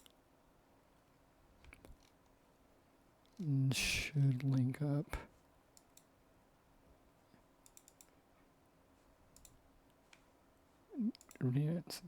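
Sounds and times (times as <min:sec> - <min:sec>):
faint computer clicks: 0:07.6 - 0:08.2, 0:09.3 - 0:10.3, 0:11.1 - 0:11.4.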